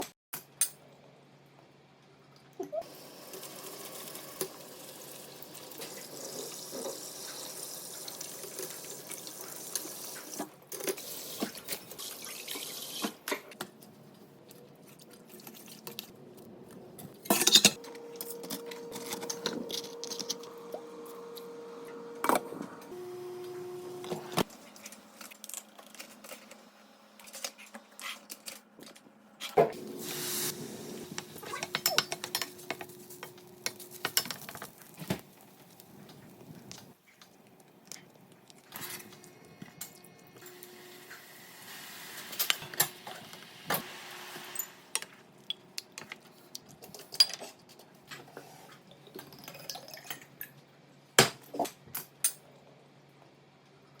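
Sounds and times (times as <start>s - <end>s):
dishes and pots clinking: 17.2s - 17.8s, 31.4s - 34.8s
steady hiss: 29.8s - 31.4s.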